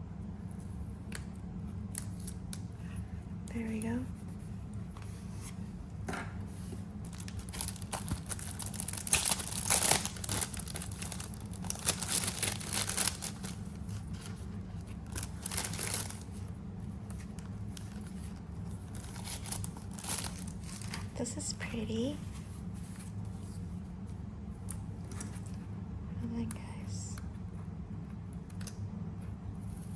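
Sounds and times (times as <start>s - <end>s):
steady low hum: 0.0s - 29.9s
paper crinkling and rustling: 6.6s - 23.6s.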